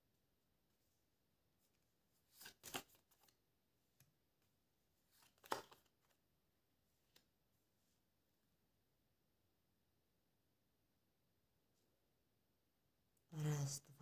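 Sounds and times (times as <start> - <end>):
cards shuffling: 2.2 - 3.3, 5.1 - 6.2.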